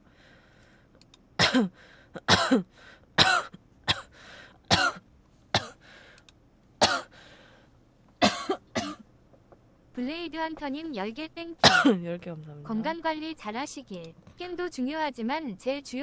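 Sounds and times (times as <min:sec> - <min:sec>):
person coughing: 0:01.4 - 0:04.1, 0:04.7 - 0:05.0, 0:05.6 - 0:05.8, 0:06.8 - 0:07.2, 0:08.2 - 0:09.0, 0:11.6 - 0:12.0.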